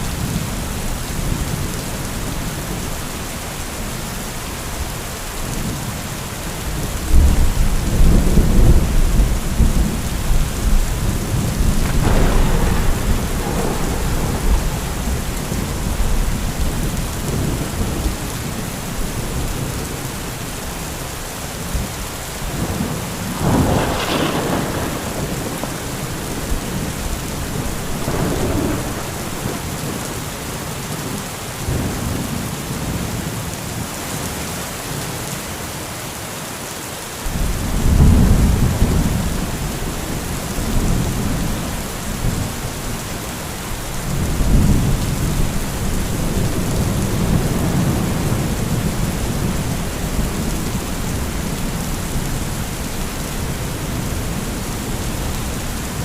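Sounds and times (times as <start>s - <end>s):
heavy rain falling: 0.0s - 56.0s
thunder cracks and rumbles: 6.7s - 19.9s, 21.7s - 30.4s, 37.3s - 56.0s.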